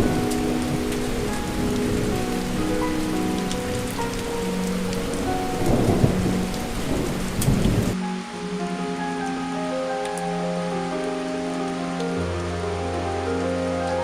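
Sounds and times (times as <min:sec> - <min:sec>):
thunder rumbling: 0:00.0 - 0:08.0
heavy rain falling: 0:00.0 - 0:14.0
soft background music: 0:00.0 - 0:14.0.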